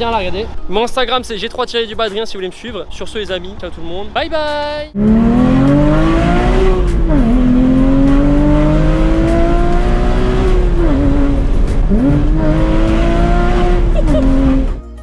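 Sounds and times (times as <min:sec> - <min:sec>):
car engine revving hard: 0:05.0 - 0:14.8.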